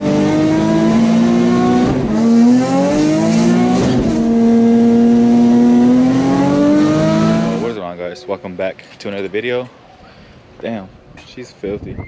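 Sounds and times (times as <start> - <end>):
car engine accelerating: 0.0 - 7.8.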